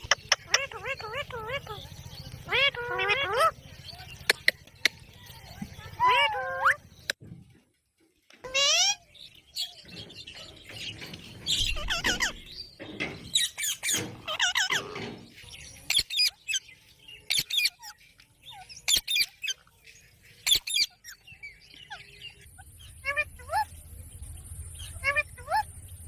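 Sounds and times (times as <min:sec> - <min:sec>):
parrots squawking: 0:00.0 - 0:01.8, 0:02.4 - 0:04.5, 0:06.0 - 0:06.9, 0:08.4 - 0:09.1, 0:11.5 - 0:12.5, 0:13.3 - 0:15.3, 0:21.9 - 0:23.7, 0:24.8 - 0:25.7.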